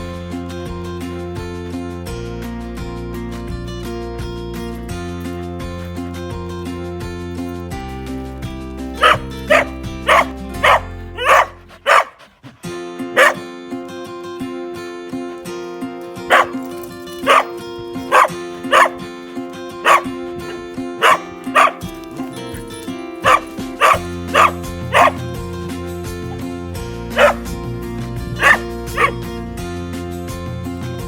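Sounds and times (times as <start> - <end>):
background music: 0.0 - 31.0
dog barking: 9.0 - 13.4, 16.3 - 19.2, 19.8 - 22.3, 23.2 - 25.4, 26.2 - 27.5, 28.4 - 29.4.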